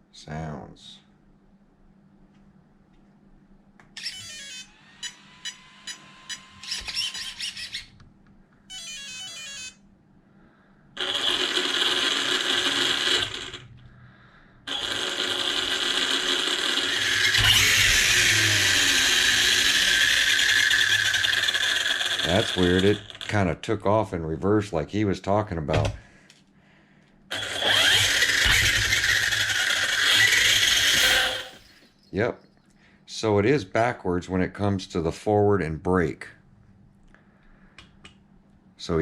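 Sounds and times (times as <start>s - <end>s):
electric motor spinning up: 4.0s - 7.8s, 11.0s - 13.7s, 14.7s - 23.2s, 27.3s - 31.7s.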